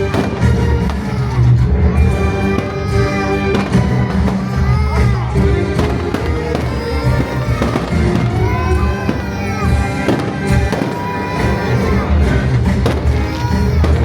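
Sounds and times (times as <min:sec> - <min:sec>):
fireworks bangs and pops: 0:00.0 - 0:14.0
loud music: 0:00.0 - 0:14.0.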